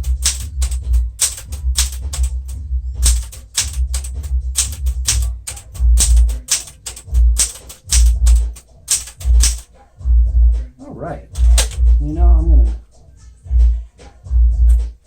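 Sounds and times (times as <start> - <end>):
music with deep bass line: 0.0 - 8.5, 9.2 - 15.0
manual typewriter keys striking: 0.0 - 9.7, 11.3 - 11.9.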